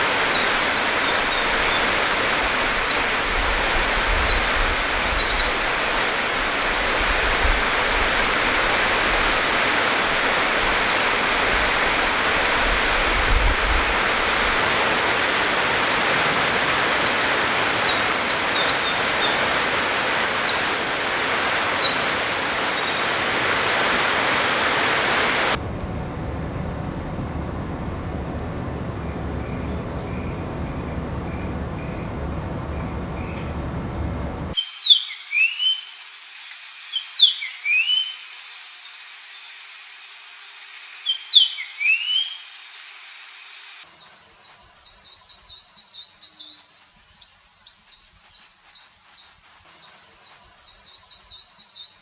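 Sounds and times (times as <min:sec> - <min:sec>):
wren singing: 0:00.0 - 0:07.2, 0:17.0 - 0:23.5, 0:25.5 - 0:34.6
running water: 0:00.0 - 0:34.6.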